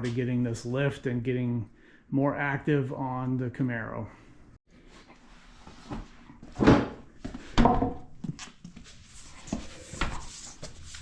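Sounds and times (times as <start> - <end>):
objects thudding and clunking: 5.7 - 8.4.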